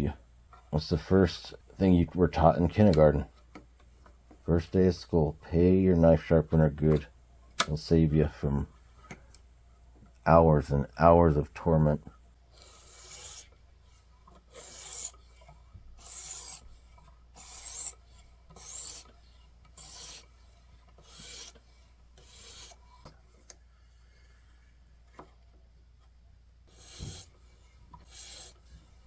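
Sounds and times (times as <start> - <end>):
knife rasping on sharpening stone: 12.6 - 13.5, 14.5 - 16.7, 17.4 - 19.1, 19.8 - 20.3, 21.0 - 21.6, 22.2 - 22.8, 26.7 - 27.3, 28.0 - 28.6.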